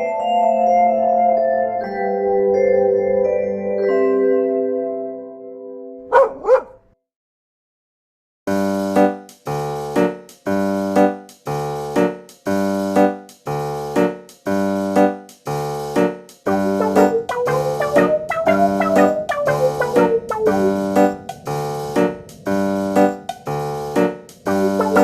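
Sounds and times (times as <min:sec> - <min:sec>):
small dog barking: 0:06.1 - 0:06.9
keyboard chords music: 0:08.5 - 0:25.0.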